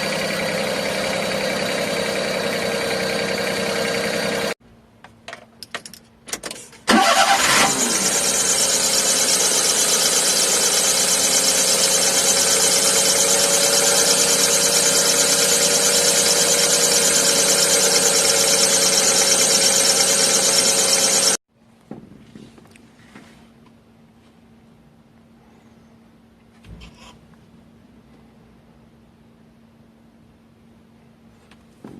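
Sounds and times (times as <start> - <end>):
truck engine running: 0.0 - 4.6, 6.9 - 21.4
belt whine: 6.9 - 21.4.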